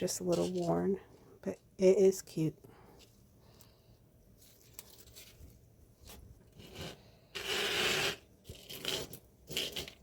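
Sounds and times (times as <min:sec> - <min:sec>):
jewelry and packaging rustling: 0:00.0 - 0:03.7, 0:04.3 - 0:10.0
long rubbing scrape: 0:06.5 - 0:10.0.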